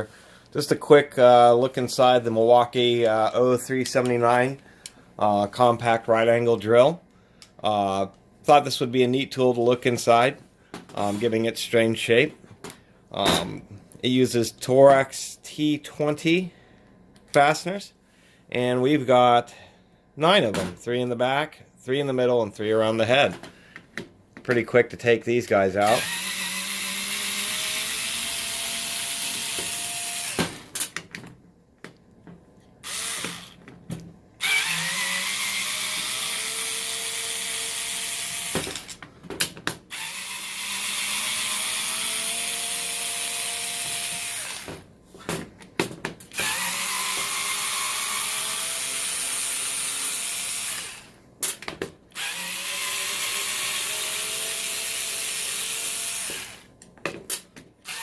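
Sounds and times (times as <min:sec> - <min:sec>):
cordless screwdriver running: 0:25.9 - 0:30.4, 0:32.8 - 0:33.6, 0:34.4 - 0:39.0, 0:39.9 - 0:44.7, 0:46.4 - 0:51.1, 0:52.2 - 0:56.7.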